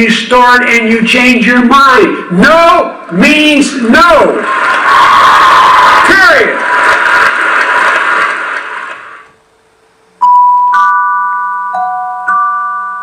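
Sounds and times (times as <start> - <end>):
glockenspiel melody: 10.2 - 13.0.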